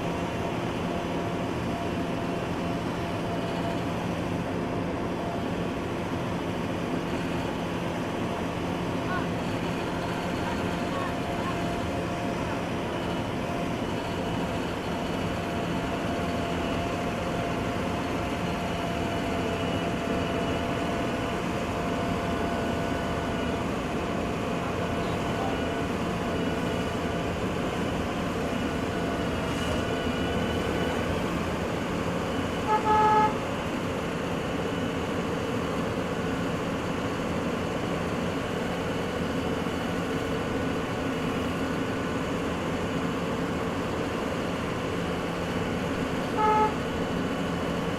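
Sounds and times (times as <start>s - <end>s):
construction vehicle engine running: 0.0s - 47.9s
vehicle horn toot: 32.6s - 33.4s, 46.4s - 46.8s.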